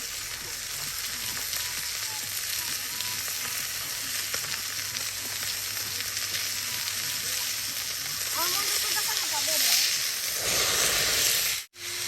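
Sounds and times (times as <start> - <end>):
campfire hissing: 0.0 - 12.0
fire crackles: 0.0 - 12.0.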